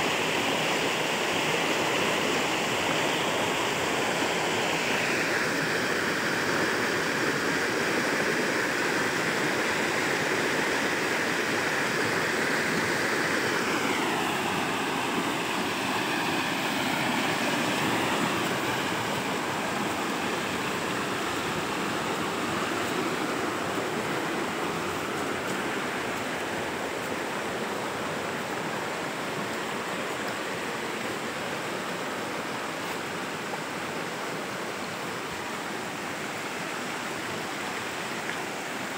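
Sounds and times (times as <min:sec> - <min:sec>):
heavy rain pouring: 0:10.8 - 0:31.0.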